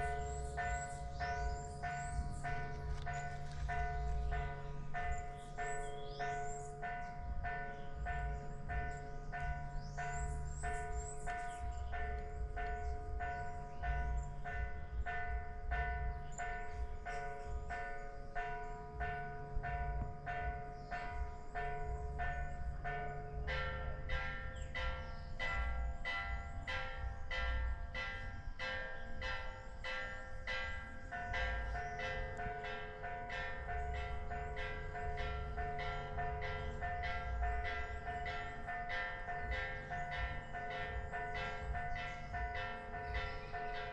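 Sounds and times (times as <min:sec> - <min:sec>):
bird chirps: 0:00.0 - 0:43.9
church bells ringing: 0:00.0 - 0:43.9.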